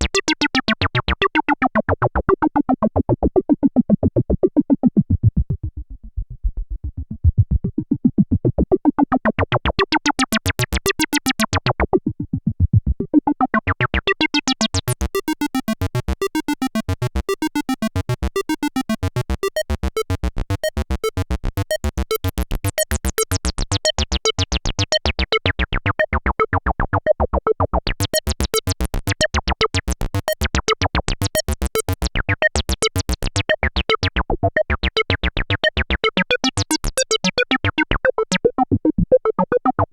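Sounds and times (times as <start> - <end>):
synthesizer acid bassline: 6.9 - 12.4, 13.0 - 24.3, 28.0 - 39.9.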